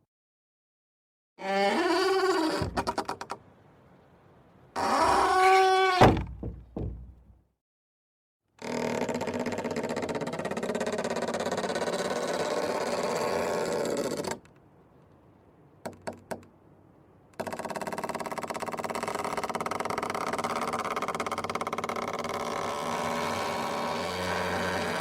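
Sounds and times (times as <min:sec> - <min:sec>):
door hinges creaking: 0:01.4 - 0:03.4, 0:04.8 - 0:07.3, 0:17.4 - 0:25.0.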